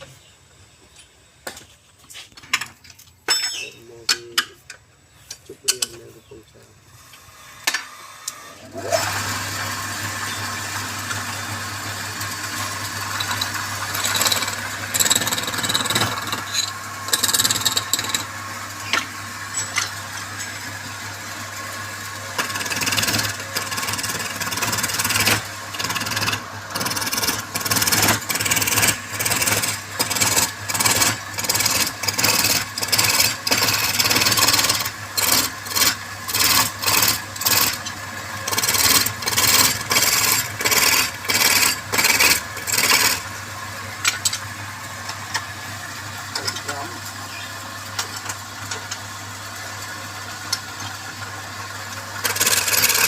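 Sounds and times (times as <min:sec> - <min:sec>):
wood lathe motor humming: 0:08.2 - 0:43.4, 0:50.2 - 0:53.0
turning tool scraping wood: 0:10.2 - 0:20.6, 0:22.2 - 0:43.3, 0:52.2 - 0:53.0.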